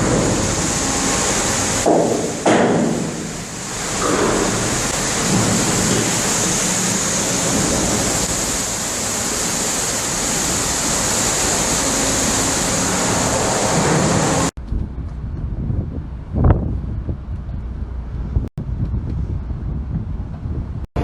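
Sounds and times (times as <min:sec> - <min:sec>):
heavy sea waves: 0:00.0 - 0:14.6
storm wind rushing: 0:00.0 - 0:21.0
loud thump: 0:01.8 - 0:03.3.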